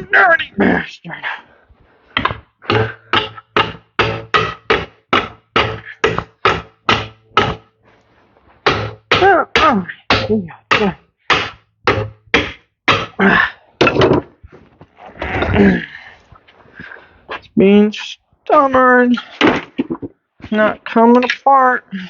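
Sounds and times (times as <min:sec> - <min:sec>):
hammer striking metal part: 0:02.2 - 0:07.7, 0:08.6 - 0:13.2.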